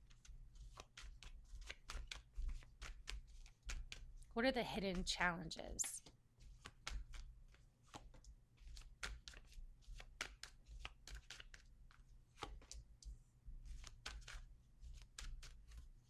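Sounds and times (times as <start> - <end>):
cards shuffling: 0.1 - 4.3, 5.8 - 15.9.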